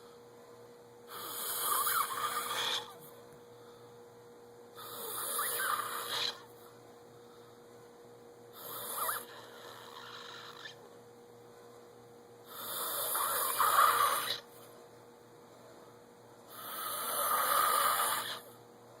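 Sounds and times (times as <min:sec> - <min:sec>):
person snoring: 0:01.1 - 0:03.0, 0:04.8 - 0:06.4, 0:08.6 - 0:10.8, 0:12.5 - 0:14.4, 0:16.5 - 0:18.4.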